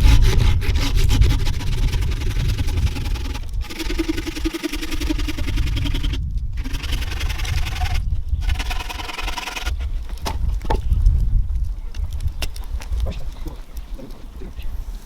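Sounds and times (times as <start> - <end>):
saw cutting wood: 0.0 - 10.2.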